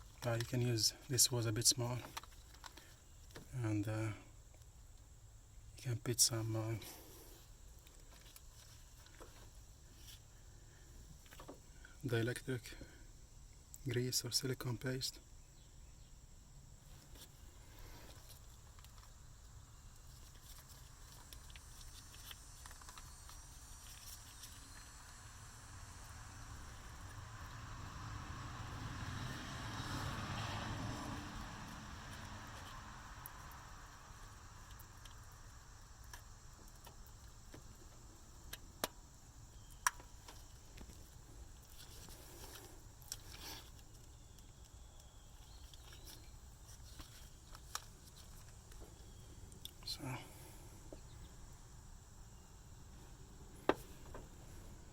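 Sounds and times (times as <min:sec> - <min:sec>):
steady low hum: 0:00.0 - 0:29.4, 0:32.9 - 0:54.9
light clicks and rustling: 0:02.0 - 0:03.5
small parts clicking and tapping: 0:19.9 - 0:24.9, 0:34.6 - 0:39.0.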